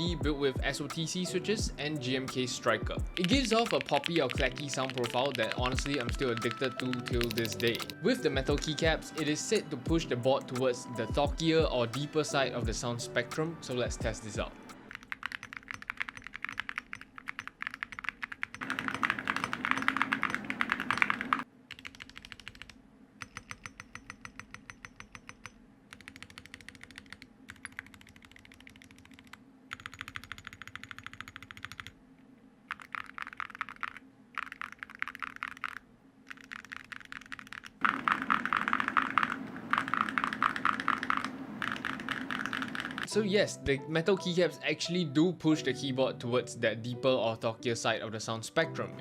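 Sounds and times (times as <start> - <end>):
mechanical keyboard typing: 1.8 - 9.7, 14.2 - 32.0, 32.7 - 43.1.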